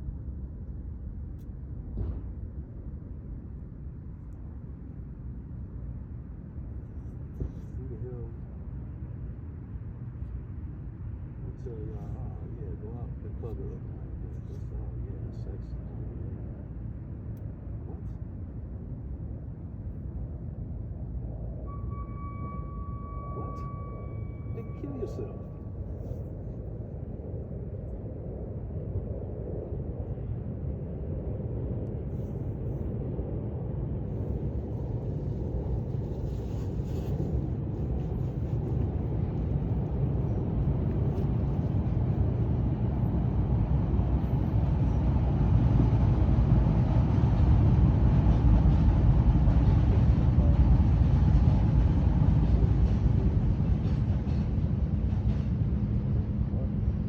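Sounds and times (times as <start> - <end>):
steady low rumble: 0.0 - 57.0.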